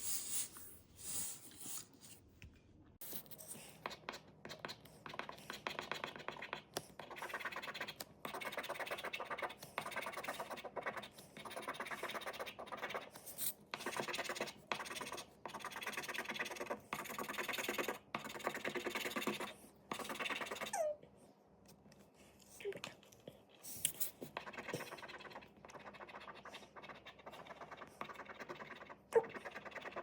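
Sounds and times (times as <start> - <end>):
scratching lottery ticket: 3.2 - 20.7, 24.4 - 30.0.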